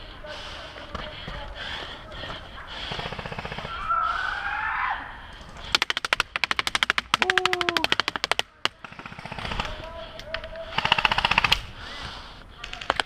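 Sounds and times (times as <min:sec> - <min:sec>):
airsoft rifle firing full-auto: 0:10.7 - 0:11.7.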